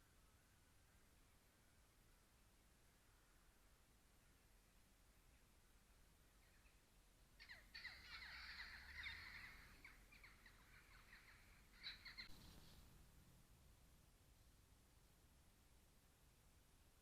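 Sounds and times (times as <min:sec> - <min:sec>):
faint harsh bird cawing: 0:06.4 - 0:13.0.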